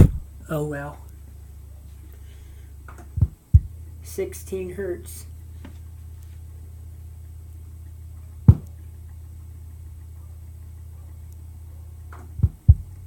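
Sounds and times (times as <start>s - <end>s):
sharp thump: 0.0s - 0.3s, 8.5s - 8.7s, 12.4s - 12.9s
subwoofer low hum: 0.0s - 13.0s.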